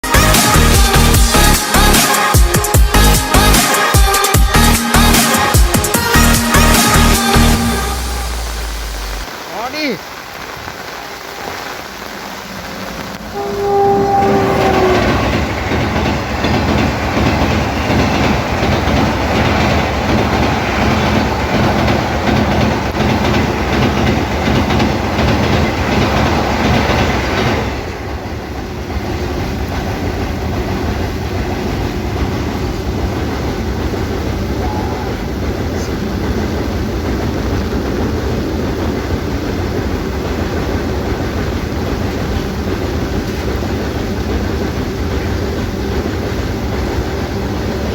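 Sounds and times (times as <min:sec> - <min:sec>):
train rumbling over bridge: 0:00.0 - 0:47.9
train horn: 0:10.9 - 0:16.6
wheels clattering on rail joints: 0:12.6 - 0:47.9.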